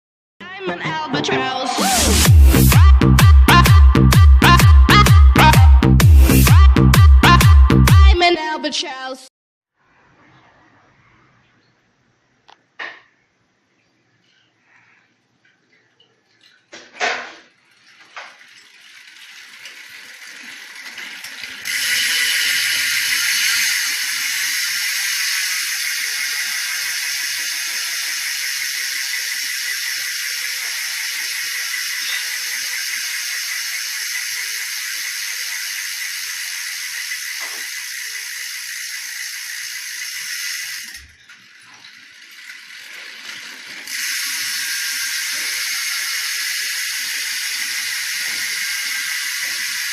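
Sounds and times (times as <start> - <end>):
bicycle hub ratcheting buzz: 1.8 - 8.1, 17.3 - 49.9.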